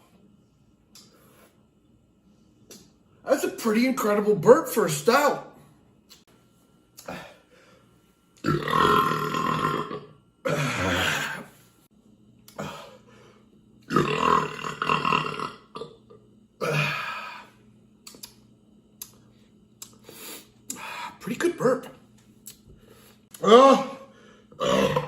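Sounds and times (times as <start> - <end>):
loud burps: 8.4 - 11.5, 13.9 - 17.4, 23.4 - 25.0.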